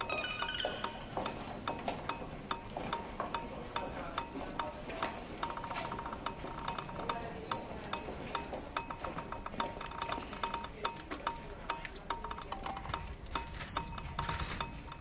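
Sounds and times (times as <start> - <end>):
electronic beeps: 0.0 - 1.8, 5.4 - 7.2, 8.0 - 15.0
rhythmic percussion clicks: 0.0 - 15.0.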